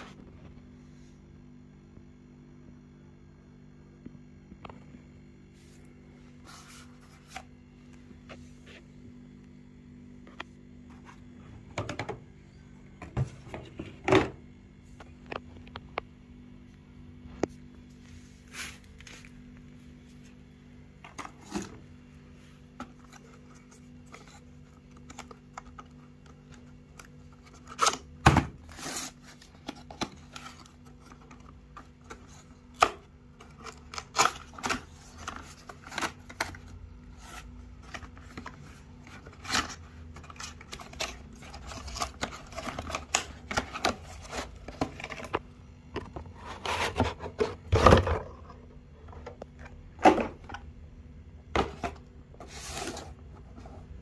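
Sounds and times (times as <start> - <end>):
packaging handling clicks and rubbing: 22.6 - 47.7.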